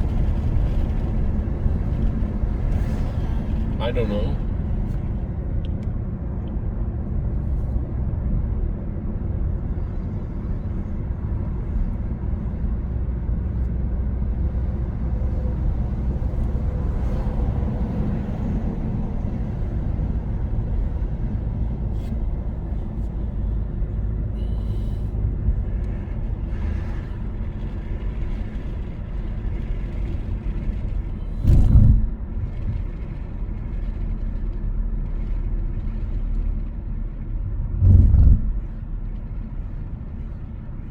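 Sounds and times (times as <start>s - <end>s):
road and engine noise: 0.0s - 40.9s
loud low thump: 31.4s - 32.3s, 37.7s - 38.7s.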